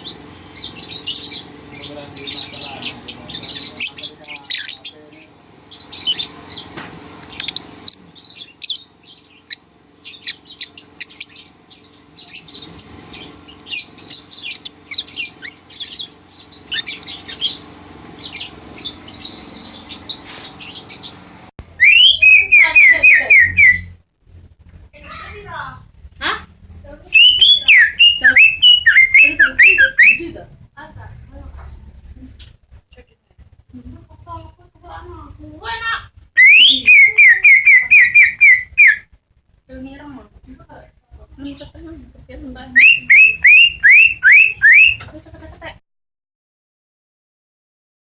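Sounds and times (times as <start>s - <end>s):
lovebirds chirping: 0.0s - 39.1s, 39.7s - 45.7s
loud rising bird calls: 7.4s - 24.0s, 27.2s - 30.3s, 36.4s - 39.1s, 42.8s - 45.0s.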